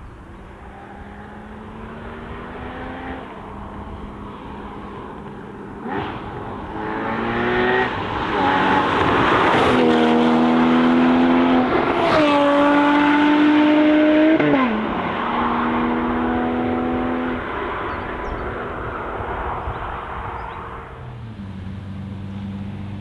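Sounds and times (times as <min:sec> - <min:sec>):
sports car engine accelerating: 0:00.6 - 0:18.6.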